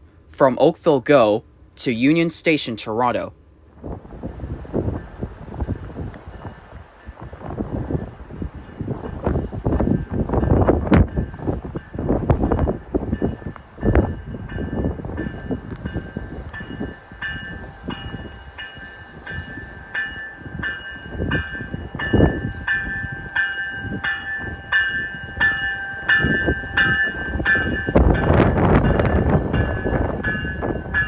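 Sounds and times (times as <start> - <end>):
train rumble and wheel clatter: 3.5 - 31.0.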